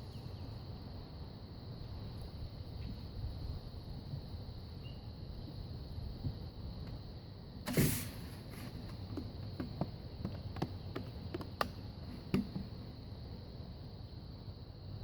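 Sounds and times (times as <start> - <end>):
scraping rustle: 7.7 - 9.2
light clicks and knocks: 8.6 - 12.8.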